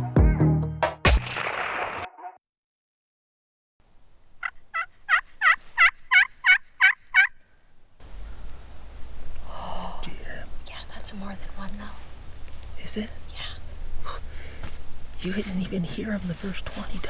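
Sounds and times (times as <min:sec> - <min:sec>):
turkey yelps: 0:04.4 - 0:07.3.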